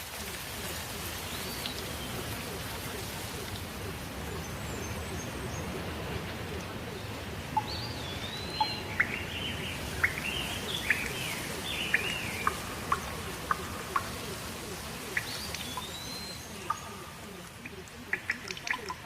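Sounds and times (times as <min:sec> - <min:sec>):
birds singing and chirping: 0:00.0 - 0:19.0
rain hiss: 0:00.0 - 0:19.0.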